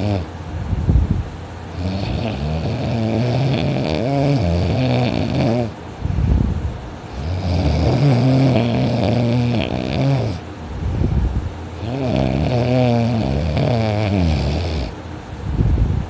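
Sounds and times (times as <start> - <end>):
person snoring heavily: 0.0 - 0.3, 1.7 - 5.8, 7.1 - 10.4, 11.8 - 15.0
noisy breath: 3.4 - 11.6.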